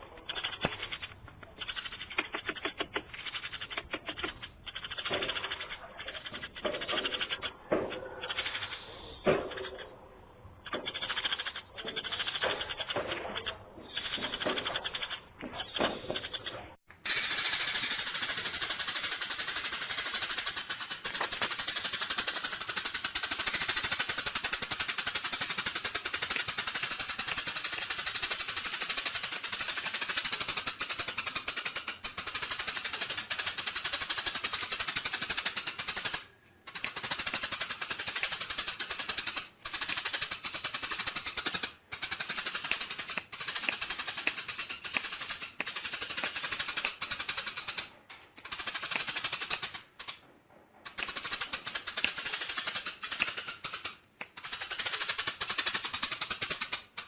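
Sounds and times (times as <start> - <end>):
songbird rattling chatter: 0.0 - 50.2, 50.8 - 57.0.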